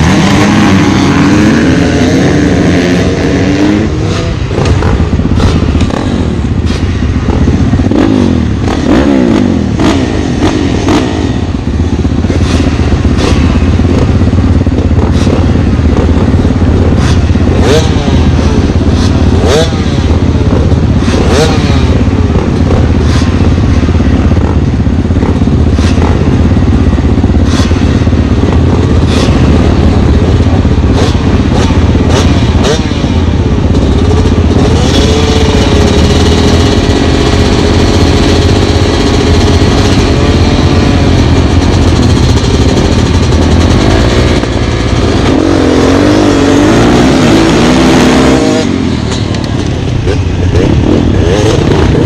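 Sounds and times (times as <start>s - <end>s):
dirt bike engine revving: 0.0s - 52.0s.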